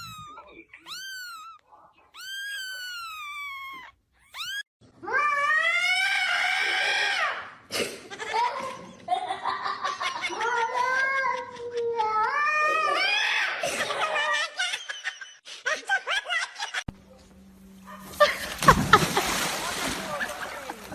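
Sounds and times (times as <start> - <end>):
cat yowling: 0.0 - 7.1.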